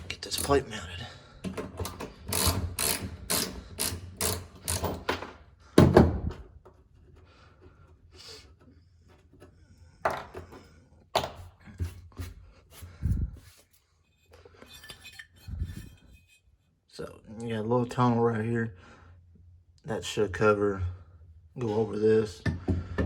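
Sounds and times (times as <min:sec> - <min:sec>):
tools and parts knocking: 0:01.4 - 0:06.8, 0:10.0 - 0:11.5, 0:22.4 - 0:23.0
ratchet wrench clicking: 0:01.9 - 0:04.9.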